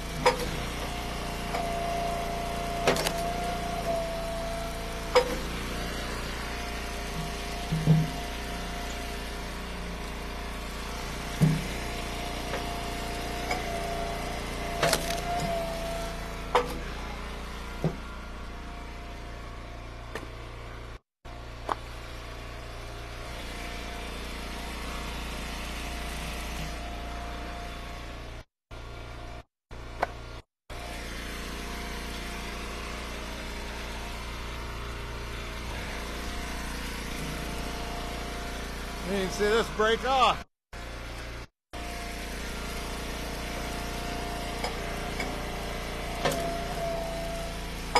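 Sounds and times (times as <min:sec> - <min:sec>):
wood splitter engine running: 0:00.0 - 0:47.9.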